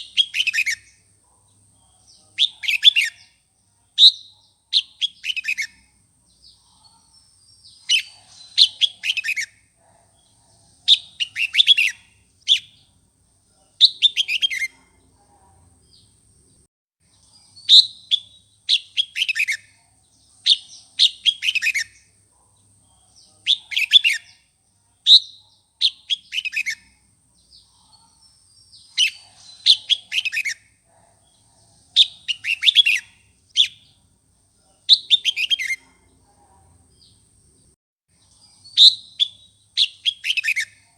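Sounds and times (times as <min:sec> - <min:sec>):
bird singing: 0:00.0 - 0:13.0, 0:13.6 - 0:34.1, 0:34.7 - 0:40.9.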